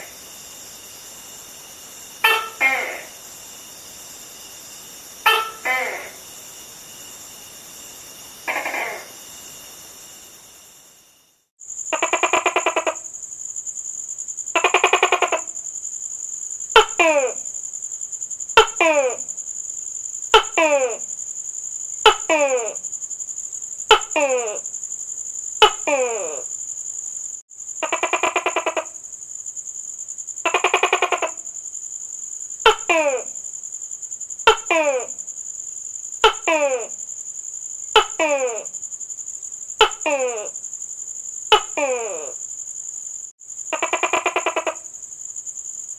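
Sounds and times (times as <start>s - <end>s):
gecko calls: 0.0s - 10.4s, 11.9s - 13.1s, 14.5s - 15.6s, 16.7s - 17.5s, 18.6s - 19.3s, 20.3s - 21.2s, 22.0s - 22.8s, 23.9s - 24.7s, 25.6s - 26.6s, 27.8s - 29.0s, 30.4s - 31.6s, 32.6s - 33.4s, 34.4s - 35.3s, 36.2s - 37.0s, 37.9s - 38.8s, 39.8s - 40.6s, 41.4s - 42.5s, 43.7s - 45.0s
high-pitched background tone: 0.0s - 11.2s
steady high whine: 0.0s - 11.4s
gecko call falling in pitch: 2.2s - 6.8s, 8.3s - 10.0s, 39.8s - 40.6s.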